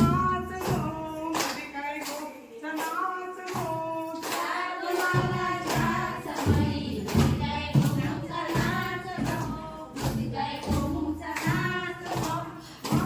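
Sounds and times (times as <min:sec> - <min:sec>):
group singing folk song: 0:00.0 - 0:13.0
clap-like thuds: 0:03.5 - 0:13.0.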